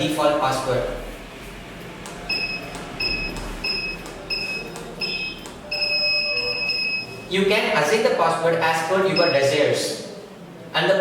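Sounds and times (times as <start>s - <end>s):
high-pitched keypad beeps: 2.3s - 7.3s, 9.0s - 9.6s
longer beep: 2.3s - 7.3s, 9.1s - 9.5s.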